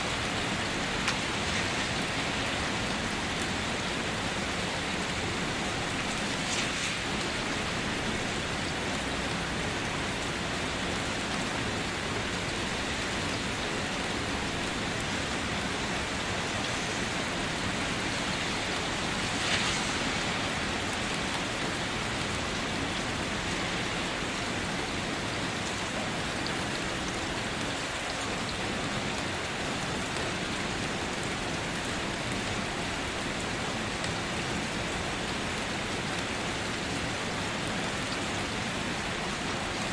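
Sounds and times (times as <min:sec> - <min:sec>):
heavy rain pattering: 0:00.0 - 0:39.9
water splashes: 0:00.2 - 0:09.7, 0:14.1 - 0:24.4.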